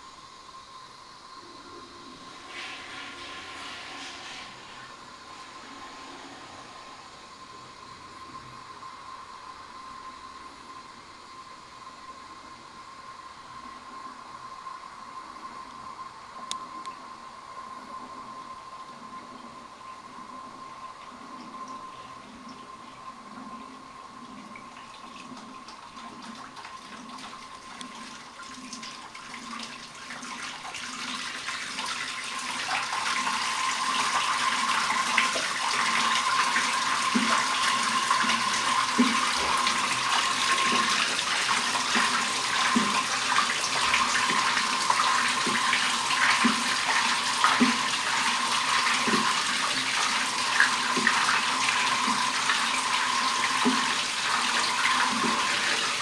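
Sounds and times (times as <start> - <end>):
steady machine whine: 0.0 - 24.1
washing machine churning water: 0.7 - 14.9, 17.6 - 56.0.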